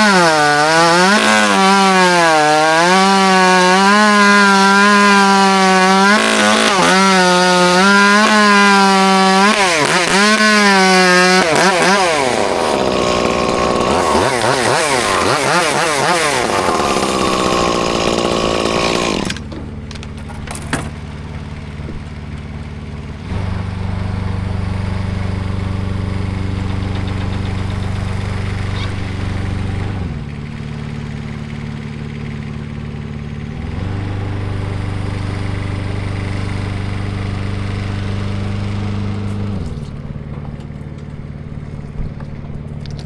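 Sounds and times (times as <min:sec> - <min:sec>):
aerial lift engine running: 0:16.5 - 0:43.0.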